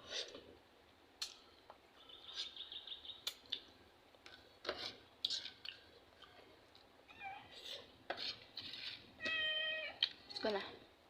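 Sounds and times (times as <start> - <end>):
eating mouth clicks and smacks: 3.2 - 3.7
cat meowing: 9.2 - 10.0.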